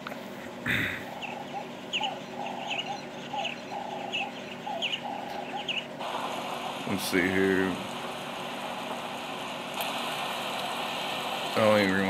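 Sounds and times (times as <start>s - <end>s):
lower broken warbling call: 1.1s - 5.9s
bird high chirps: 1.1s - 6.0s.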